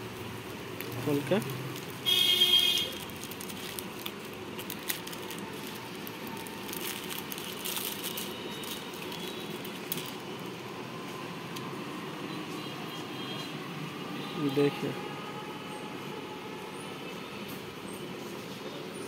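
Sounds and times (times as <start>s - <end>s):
plastic packet crinkling: 0.8s - 10.3s.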